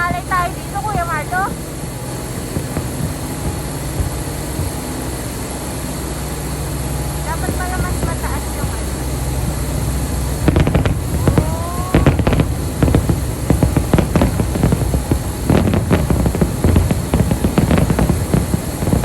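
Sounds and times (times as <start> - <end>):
fireworks bangs and crackles: 0.0 - 19.0
low rumble: 0.0 - 19.0
firework rising whistle: 10.3 - 19.0.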